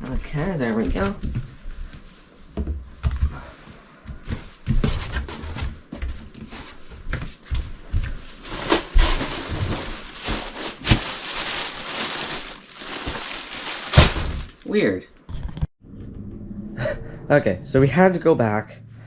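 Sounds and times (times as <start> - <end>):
packaging rustling and crinkling: 8.0 - 14.7.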